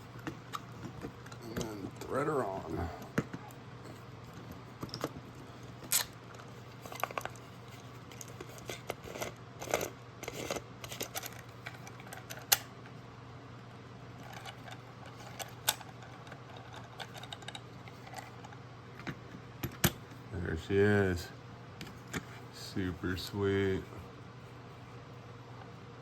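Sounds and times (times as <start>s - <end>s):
faint low hum: 0.0s - 26.0s
small metal parts clicking and scraping: 5.8s - 12.6s, 14.2s - 18.6s.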